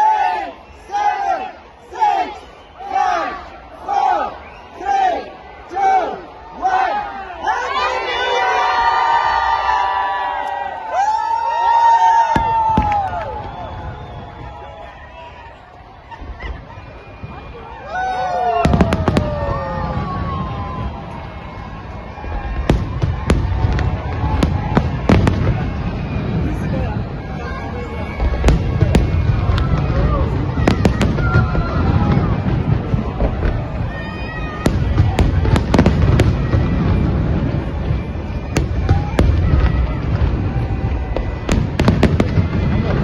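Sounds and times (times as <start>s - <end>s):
rumble of fireworks bursts: 11.7s - 43.0s
sharp firework bangs: 22.2s - 26.4s, 28.1s - 43.0s.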